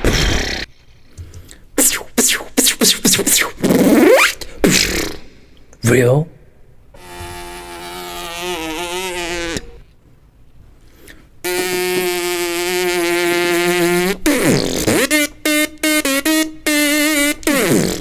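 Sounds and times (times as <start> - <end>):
beatboxer imitating sound effects: 1.5 - 5.6, 7.0 - 9.8, 11.5 - 18.0.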